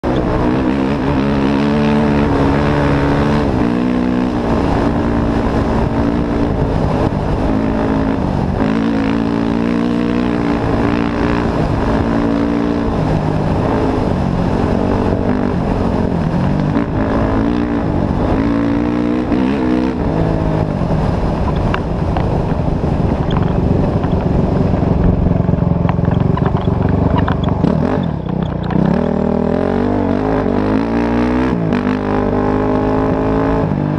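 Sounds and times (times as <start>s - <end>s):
race vehicle engine revving: 0.0s - 21.2s.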